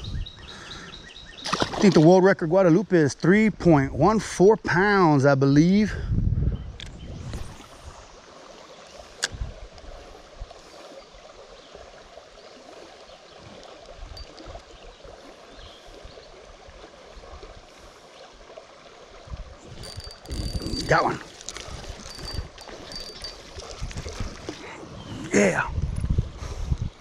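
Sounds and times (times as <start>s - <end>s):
creek water flowing: 7.0s - 27.0s.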